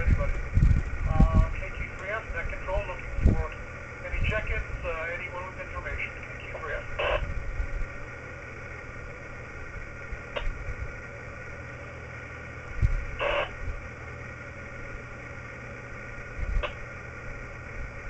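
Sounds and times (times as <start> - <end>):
crackles of noise: 0.0 - 18.0
steady hum: 0.0 - 18.0
radio receiver hissing: 1.0 - 8.0, 12.6 - 13.7, 16.2 - 17.2.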